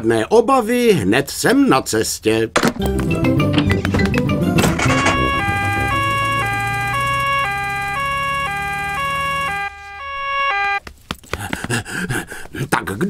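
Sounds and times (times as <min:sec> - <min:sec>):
low hum rising in pitch: 0:04.4 - 0:10.4
two-tone cartoon siren: 0:04.6 - 0:10.8.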